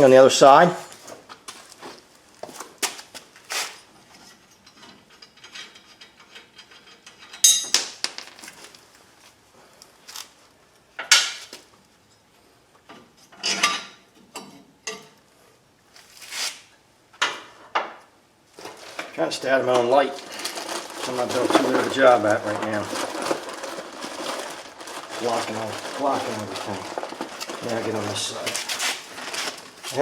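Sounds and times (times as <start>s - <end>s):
metal tools clicking and clanking: 4.4s - 8.2s.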